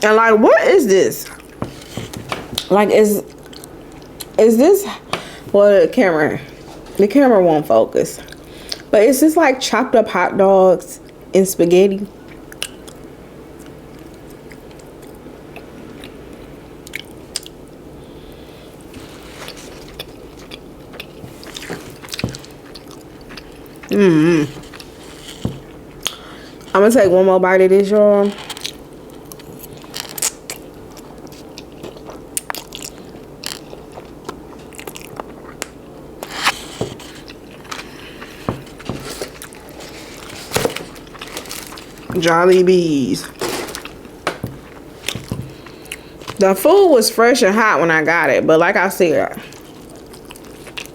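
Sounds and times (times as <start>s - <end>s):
person chewing food: 3.3s - 4.4s, 12.3s - 26.8s, 28.4s - 42.2s, 43.2s - 46.4s, 49.4s - 50.9s.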